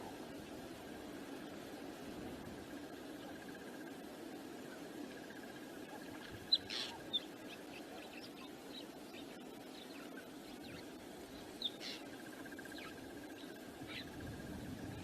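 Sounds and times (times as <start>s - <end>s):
wind on microphone: 13.8s - 15.0s.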